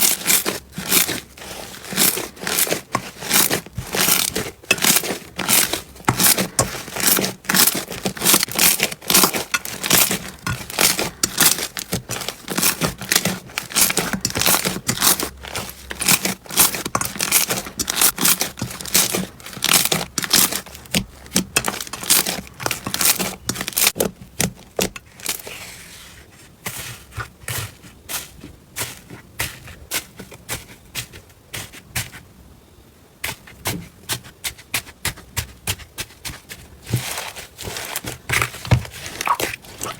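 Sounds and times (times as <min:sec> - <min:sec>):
slime crackling and popping: 0:00.0 - 0:25.4, 0:38.8 - 0:39.9.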